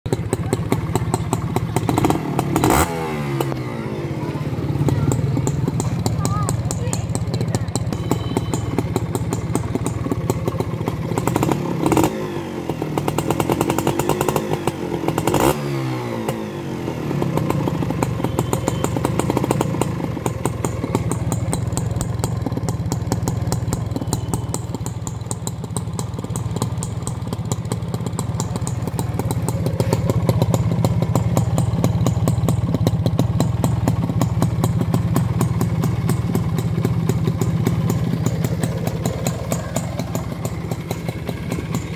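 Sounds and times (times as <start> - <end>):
motorcycle engine idling and revving: 0.0 - 41.9
sharp engine knock: 4.8 - 12.1.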